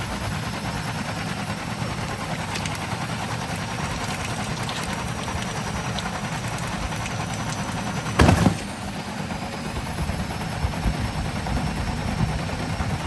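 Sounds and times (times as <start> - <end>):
washing machine rumbling: 0.0 - 13.0
loud thump: 8.2 - 8.7.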